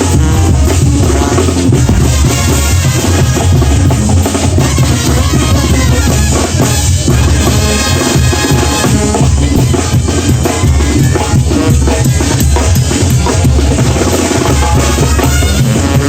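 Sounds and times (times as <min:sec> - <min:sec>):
bass drum and snare: 0:00.0 - 0:16.0
brass band music: 0:00.0 - 0:16.0
low bass line: 0:01.7 - 0:04.7.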